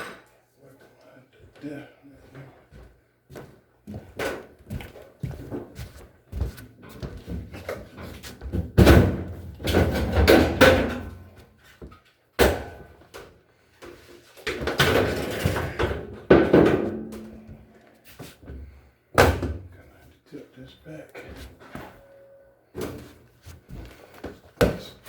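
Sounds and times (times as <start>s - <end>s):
washing machine parts banging: 8.6s - 11.2s, 14.4s - 17.7s.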